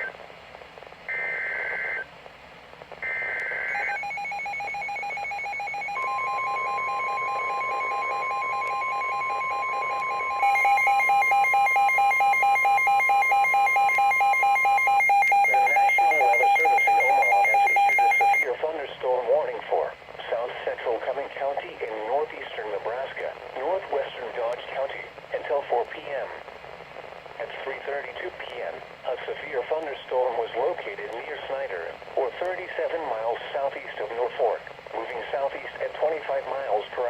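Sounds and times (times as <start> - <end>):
steady warning alarm tone: 3.1 - 18.5
electronic alarm beeping rapidly: 3.7 - 18.5.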